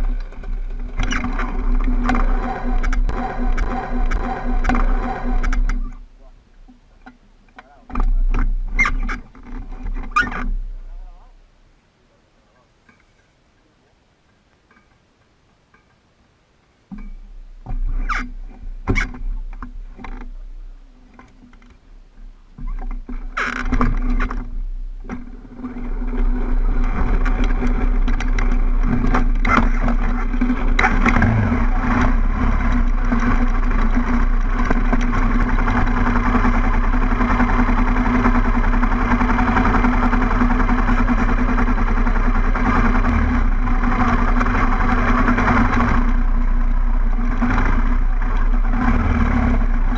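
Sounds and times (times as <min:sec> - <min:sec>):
engine knocking: 0:00.0 - 0:05.9, 0:25.1 - 0:49.9
engine running loud: 0:00.0 - 0:06.3, 0:23.7 - 0:49.9
vehicle engine starting: 0:00.0 - 0:11.1, 0:17.2 - 0:49.9.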